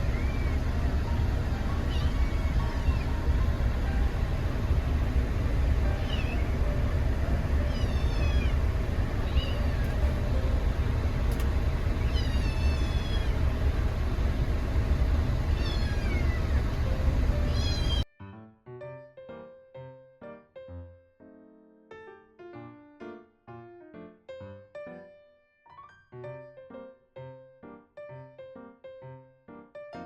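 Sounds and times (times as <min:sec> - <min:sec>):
kitten meowing: 0:00.0 - 0:00.5, 0:01.7 - 0:03.3, 0:06.0 - 0:06.5, 0:07.6 - 0:08.6, 0:09.2 - 0:10.0, 0:12.0 - 0:13.4, 0:15.5 - 0:16.6, 0:17.4 - 0:18.0
steady low rumble: 0:00.0 - 0:18.0.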